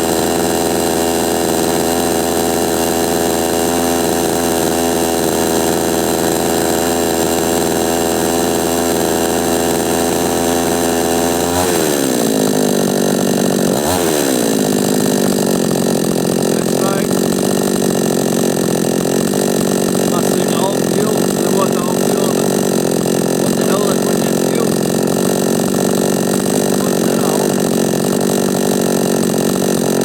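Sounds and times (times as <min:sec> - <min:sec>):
two-stroke chainsaw running: 0:00.0 - 0:30.0.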